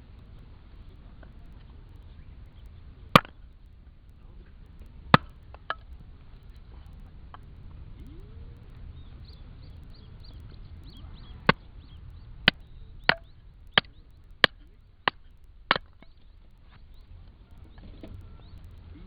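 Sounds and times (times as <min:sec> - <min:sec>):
blade chopping wood: 0:03.2 - 0:03.5, 0:05.1 - 0:05.9, 0:12.5 - 0:16.3.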